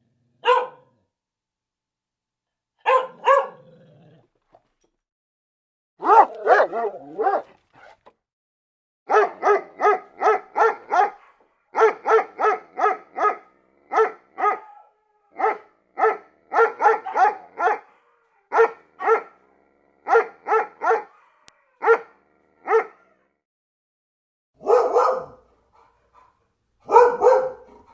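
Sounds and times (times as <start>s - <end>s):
dog barking: 0.4s - 1.1s, 2.8s - 3.8s, 6.0s - 8.1s, 9.1s - 19.4s, 20.0s - 23.3s, 24.6s - 27.9s.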